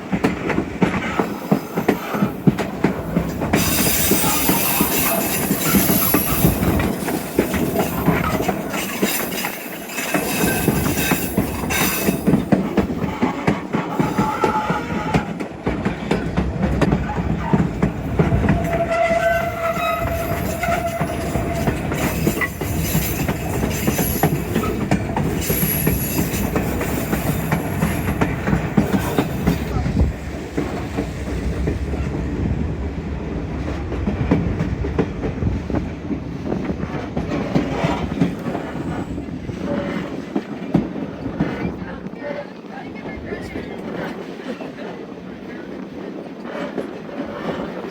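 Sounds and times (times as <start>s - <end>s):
train wheels clattering on rails: 0.0s - 47.9s
high wheel squeals: 3.6s - 12.3s, 18.4s - 24.8s.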